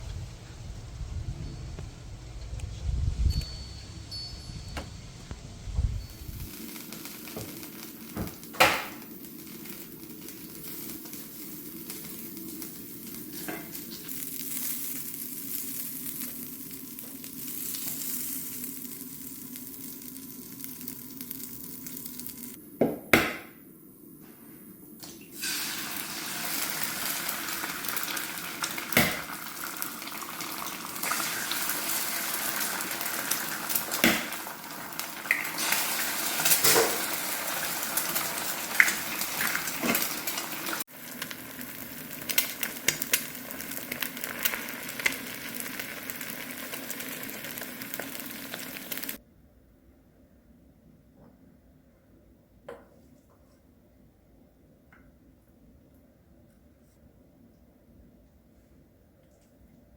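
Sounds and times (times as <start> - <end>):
vegetables sizzling in oil: 6.1 - 22.6, 25.3 - 49.2.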